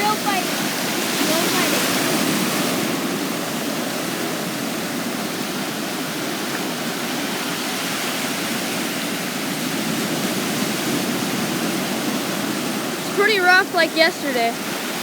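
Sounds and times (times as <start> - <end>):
surf breaking on a beach: 0.0 - 15.0.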